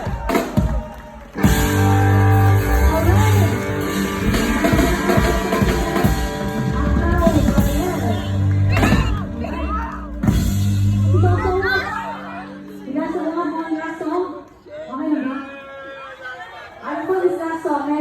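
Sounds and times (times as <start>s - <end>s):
steady bass line: 0.0s - 12.9s
live band music: 0.0s - 13.4s
guitar: 0.0s - 14.6s.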